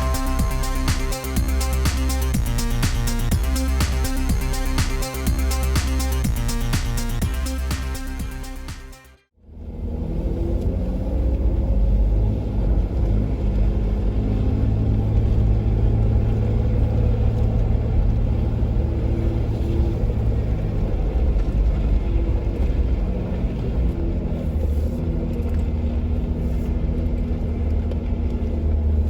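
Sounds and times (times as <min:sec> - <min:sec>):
car engine droning: 0:00.0 - 0:29.0.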